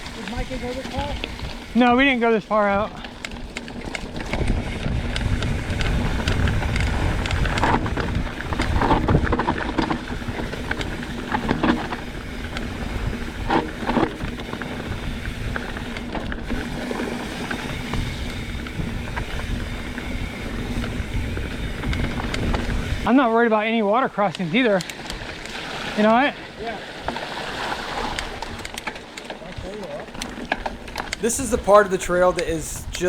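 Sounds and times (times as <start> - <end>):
bike knocks and rattles: 0.0 - 23.1, 26.9 - 31.2
wind buffeting microphone: 0.0 - 23.3, 25.0 - 33.0.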